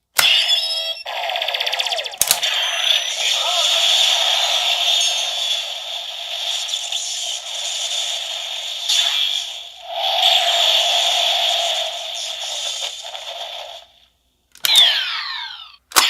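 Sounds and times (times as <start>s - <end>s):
toy belt electronic sound effects: 0.2s - 13.9s, 14.6s - 16.0s
sharp click: 2.1s - 2.5s.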